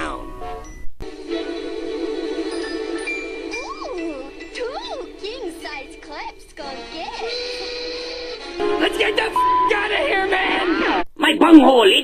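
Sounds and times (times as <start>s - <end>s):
sustained music chord: 8.4s - 10.4s.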